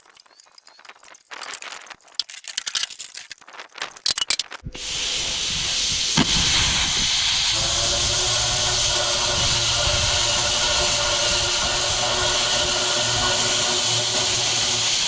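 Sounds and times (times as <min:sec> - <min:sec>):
steady hum: 0:04.6 - 0:15.0
plasma cutter air hiss: 0:04.7 - 0:15.0.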